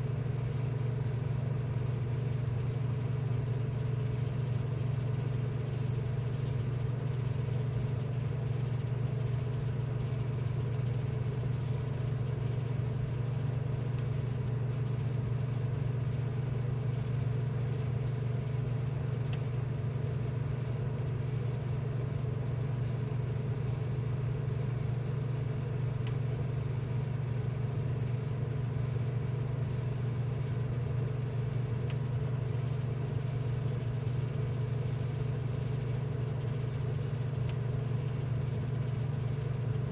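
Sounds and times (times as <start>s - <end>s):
low machine hum: 0.0s - 39.9s
faint tick: 19.2s - 19.5s, 26.0s - 26.2s, 31.8s - 32.1s.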